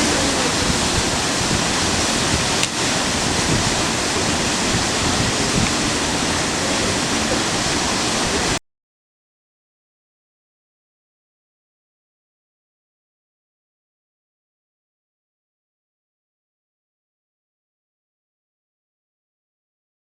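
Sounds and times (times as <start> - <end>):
waterfall rushing: 0.0 - 8.6.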